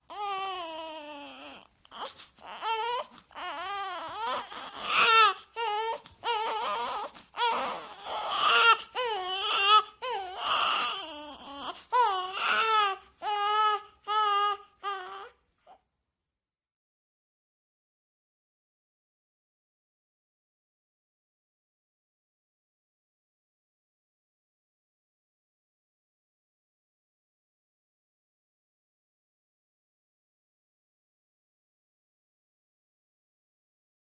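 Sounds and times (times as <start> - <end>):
baby crying: 0.1 - 15.8.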